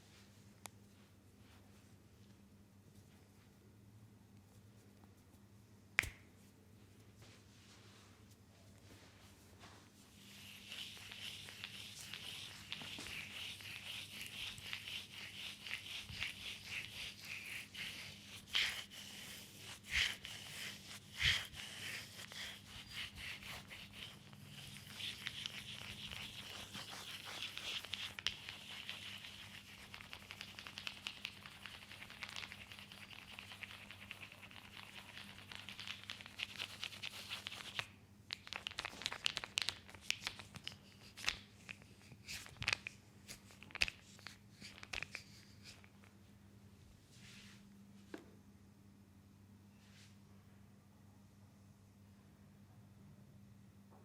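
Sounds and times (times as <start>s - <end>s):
oiled hands rubbing skin: 4.4s - 46.2s.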